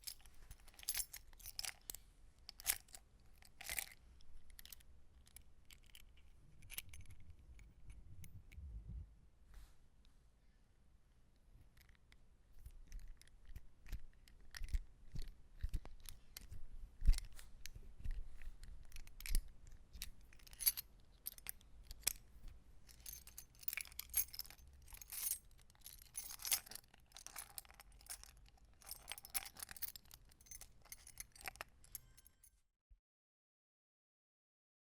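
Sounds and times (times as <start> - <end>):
metal keys jangling: 0.0 - 7.9, 18.8 - 22.2, 22.9 - 32.5.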